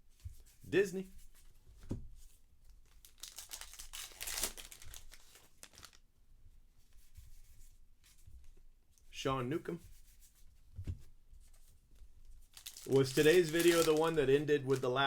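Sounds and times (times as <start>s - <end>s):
wrapper being torn open: 2.8s - 6.0s, 12.5s - 14.8s.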